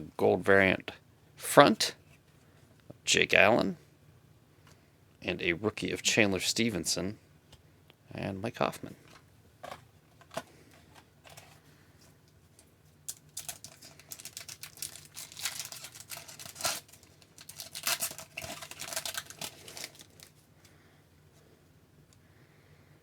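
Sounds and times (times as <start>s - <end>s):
cards being handled: 9.0s - 20.4s
foil wrapper tearing and crinkling: 12.6s - 20.4s.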